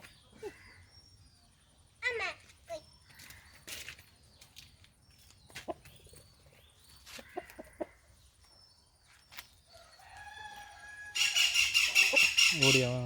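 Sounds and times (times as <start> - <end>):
chicken calling: 10.8 - 13.0.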